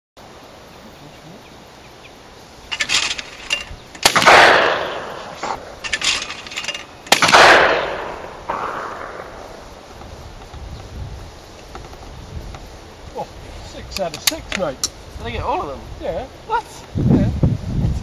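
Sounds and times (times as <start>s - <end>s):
shotgun shots: 4.0s - 6.2s, 7.1s - 9.5s.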